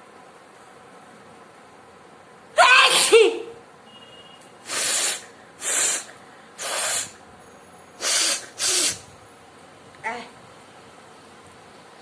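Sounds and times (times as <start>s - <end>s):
person sneezing: 2.6s - 3.6s, 4.6s - 7.2s, 8.0s - 9.0s.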